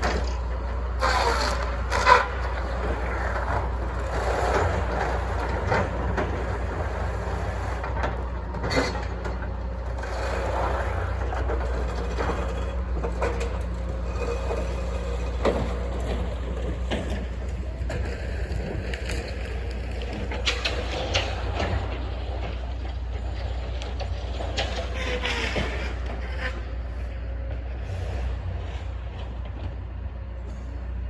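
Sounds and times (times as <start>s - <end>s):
diesel engine under load: 0.0s - 31.0s.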